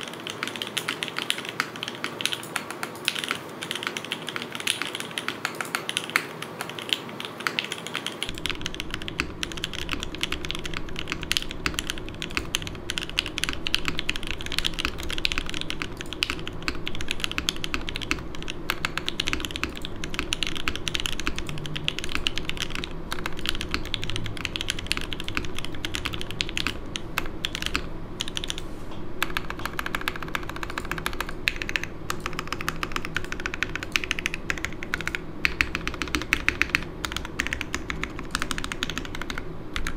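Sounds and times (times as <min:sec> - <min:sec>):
mechanical keyboard typing: 0:00.0 - 0:28.6, 0:29.2 - 0:39.9
air conditioner hum: 0:00.0 - 0:39.9.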